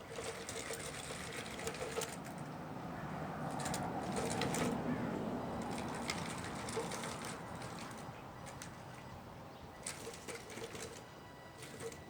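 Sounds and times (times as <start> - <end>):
small motors whirring: 5.6 - 12.0.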